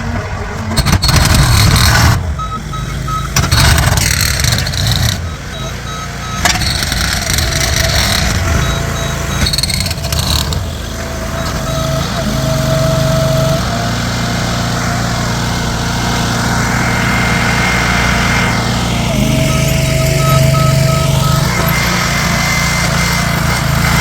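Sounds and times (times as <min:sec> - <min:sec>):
construction equipment engine running: 0:00.0 - 0:24.0
clattering: 0:00.1 - 0:12.2.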